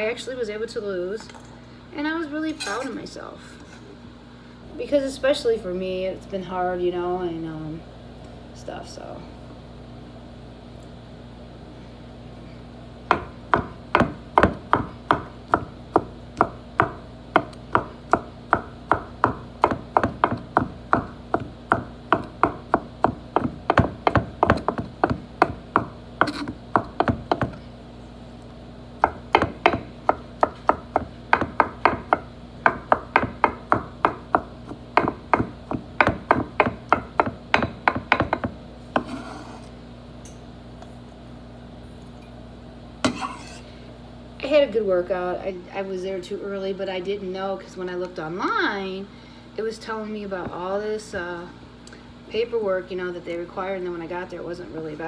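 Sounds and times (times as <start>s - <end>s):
low appliance hum: 0.0s - 55.0s
knife chopping on wooden board: 13.1s - 27.6s, 29.0s - 39.6s.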